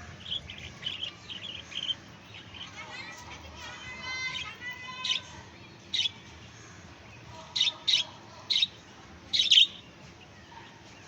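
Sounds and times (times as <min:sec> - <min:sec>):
budgerigar chirping: 0:09.4 - 0:09.7.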